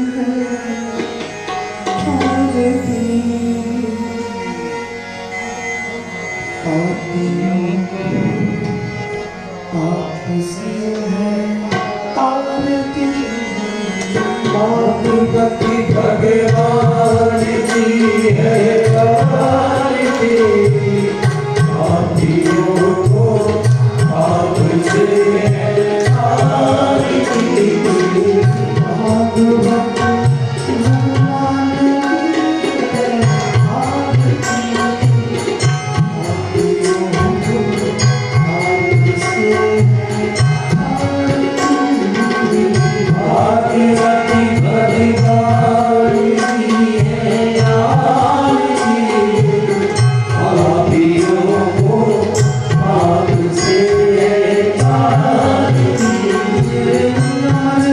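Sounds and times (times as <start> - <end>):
tabla: 0.0 - 57.9
voices singing a hymn: 9.7 - 35.0, 36.2 - 57.9.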